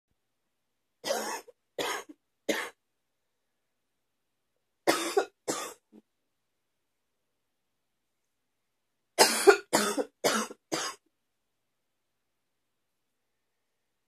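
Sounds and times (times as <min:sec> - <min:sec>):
woman coughing: 0:01.0 - 0:02.8, 0:04.9 - 0:05.8, 0:09.2 - 0:11.0.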